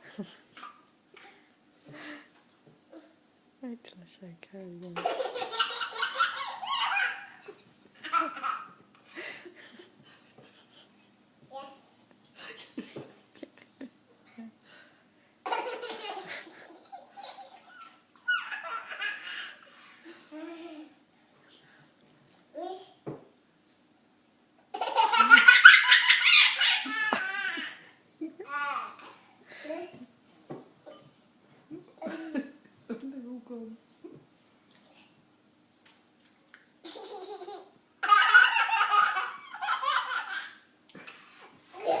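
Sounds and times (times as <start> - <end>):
small child laughing: 5.0 - 8.8, 15.5 - 19.6, 24.7 - 30.0, 36.8 - 41.2, 41.8 - 42.0
young child laughing: 24.8 - 29.0, 41.8 - 42.0.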